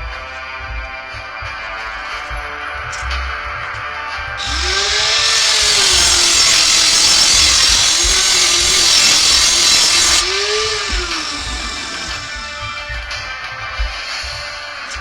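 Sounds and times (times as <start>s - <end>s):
power tool grinding with whine: 4.4s - 13.0s.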